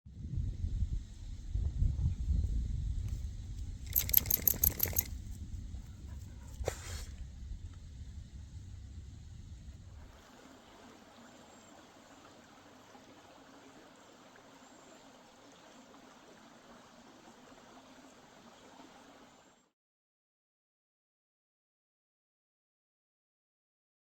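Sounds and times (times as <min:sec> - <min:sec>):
creek water flowing: 0:03.9 - 0:05.1, 0:10.0 - 0:19.7.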